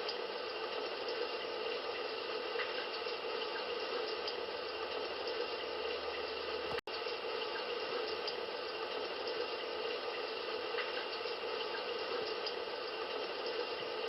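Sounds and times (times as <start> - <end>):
running water through small speaker: 0.0 - 14.0.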